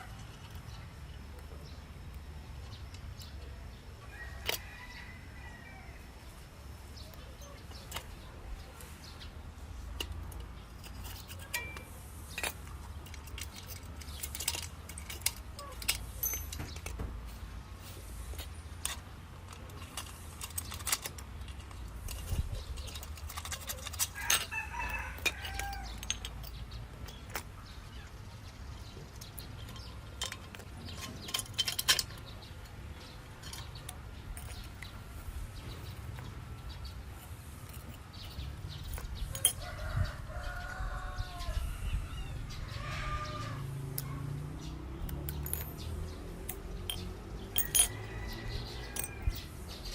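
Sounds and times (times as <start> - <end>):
chickens calling: 21.7 - 26.7, 32.0 - 44.8
rooster-like call: 39.6 - 43.8.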